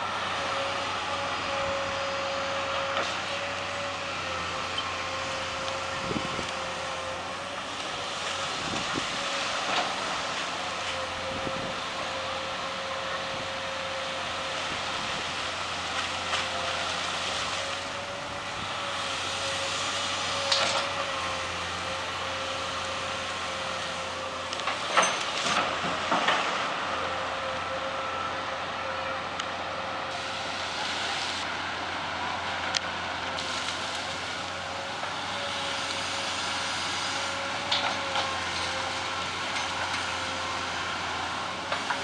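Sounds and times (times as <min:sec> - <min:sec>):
excavator running: 0:00.0 - 0:42.0.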